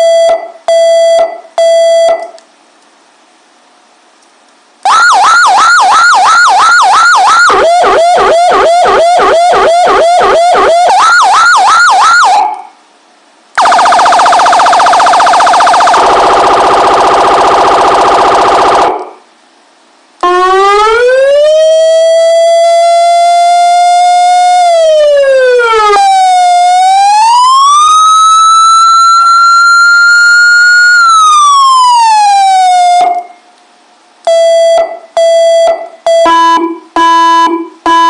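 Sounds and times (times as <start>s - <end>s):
electronic siren yelp: 4.9s - 12.7s, 13.6s - 19.2s, 20.2s - 33.4s, 34.3s - 38.0s
lower siren yelp: 4.9s - 12.7s, 13.6s - 19.2s, 20.2s - 33.4s
siren wail: 4.9s - 12.7s, 13.6s - 19.2s, 20.2s - 33.4s.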